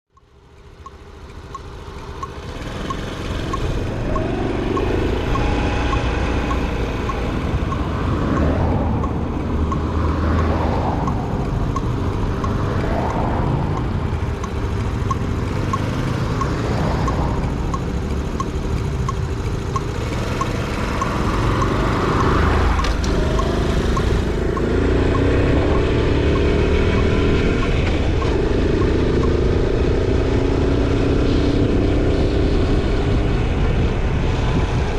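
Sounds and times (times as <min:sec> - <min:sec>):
faint regular ticking: 0:00.1 - 0:30.9
motorcycle engine accelerating: 0:00.3 - 0:34.9
wind rumble on camera: 0:20.2 - 0:34.9.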